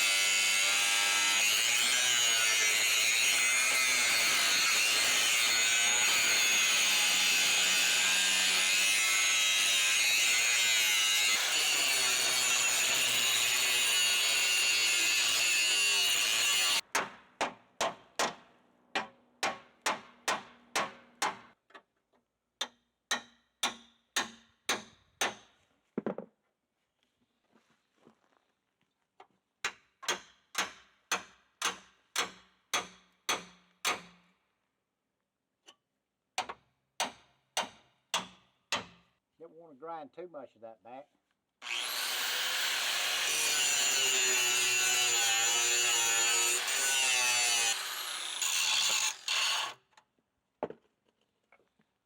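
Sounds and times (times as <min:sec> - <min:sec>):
angle grinder grinding metal: 0:00.0 - 0:16.8, 0:41.6 - 0:49.8.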